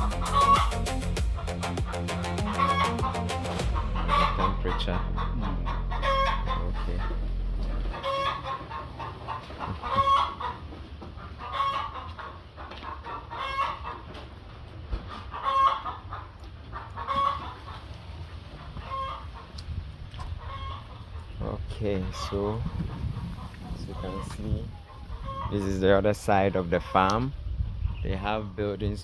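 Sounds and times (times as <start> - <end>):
chickens calling: 0.0 - 29.0
low steady hum: 3.6 - 8.0.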